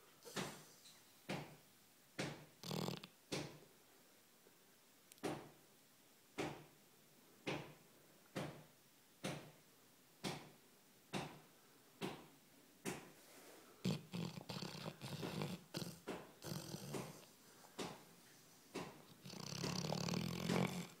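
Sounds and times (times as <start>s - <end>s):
dog snoring: 0.2s - 0.8s, 2.2s - 3.1s, 13.8s - 17.3s, 18.8s - 21.0s.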